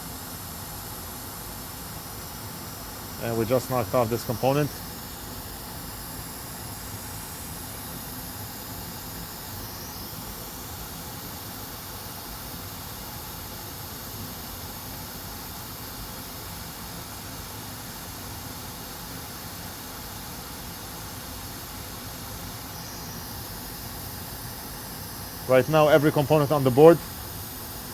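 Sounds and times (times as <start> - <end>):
hot air blower hissing: 0.0 - 27.9.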